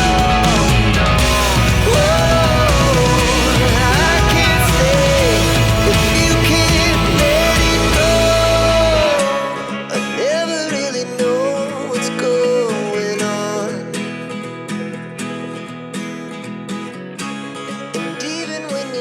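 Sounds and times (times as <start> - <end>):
heavy bass: 0.0 - 9.2
person singing: 0.0 - 14.0
plucked guitar: 0.0 - 19.0.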